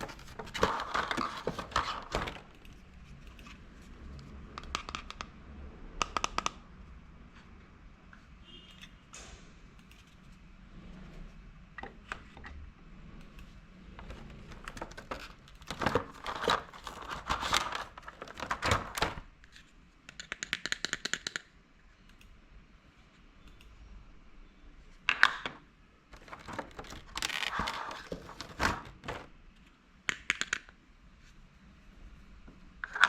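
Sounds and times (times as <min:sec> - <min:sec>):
packaging crinkling: 0:14.6 - 0:19.2, 0:26.2 - 0:29.3
plastic toys clicking: 0:20.1 - 0:21.5, 0:30.1 - 0:30.7.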